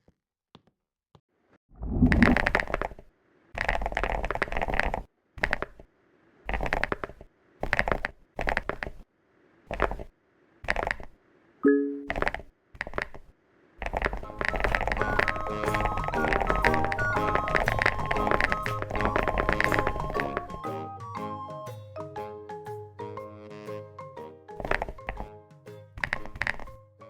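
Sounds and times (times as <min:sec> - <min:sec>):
music: 0:14.2 - 0:27.0.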